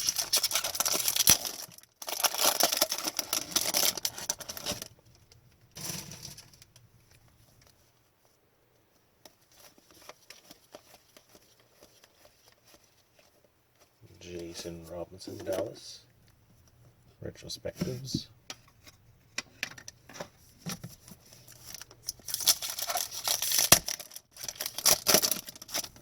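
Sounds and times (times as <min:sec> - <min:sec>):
foil wrappers tearing and crinkling: 0:00.0 - 0:04.9, 0:05.8 - 0:06.7, 0:21.4 - 0:26.0.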